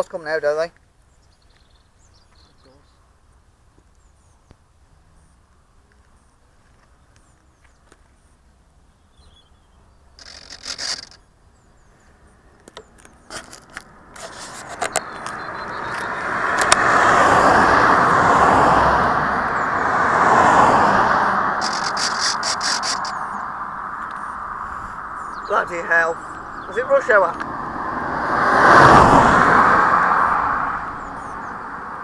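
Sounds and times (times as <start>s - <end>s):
sharp clicks: 10.2s - 11.2s, 12.6s - 16.8s, 21.6s - 23.3s
cars driving past: 13.8s - 32.0s.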